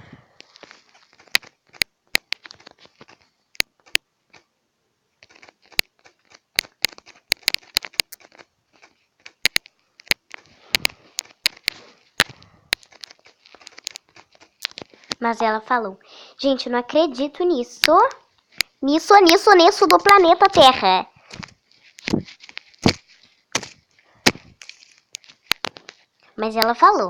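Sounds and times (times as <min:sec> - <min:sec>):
typing on touchscreen: 0:00.9 - 0:04.4, 0:05.2 - 0:15.2.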